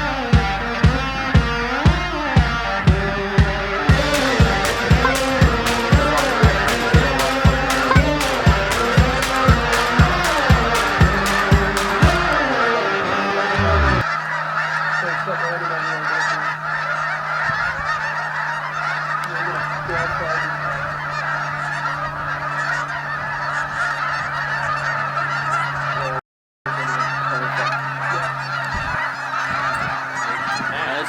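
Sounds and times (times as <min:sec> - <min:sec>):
music: 0:00.0 - 0:14.0
steady low hum: 0:00.0 - 0:14.1
flock of geese honking: 0:00.0 - 0:31.0.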